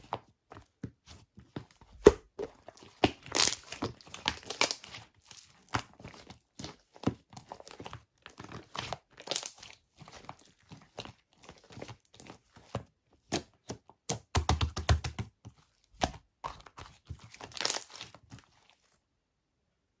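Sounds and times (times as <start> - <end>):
thin material crinkling and tearing: 2.6 - 6.8, 7.5 - 12.3, 16.6 - 19.0.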